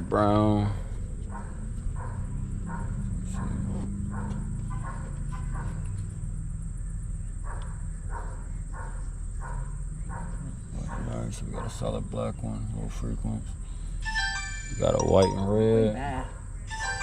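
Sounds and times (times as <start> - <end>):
steady low hum: 0.0 - 17.0
dog barking: 1.2 - 6.2, 7.3 - 12.3.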